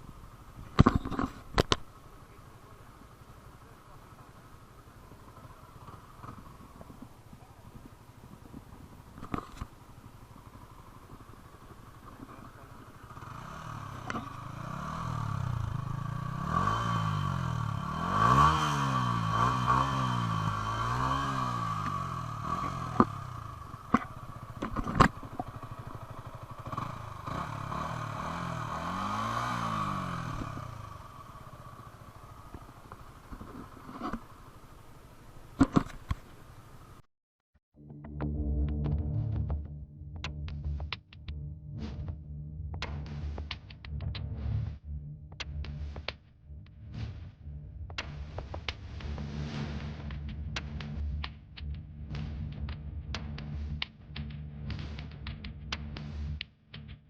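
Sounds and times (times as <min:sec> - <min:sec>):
motorcycle engine revving: 0:00.0 - 0:37.0.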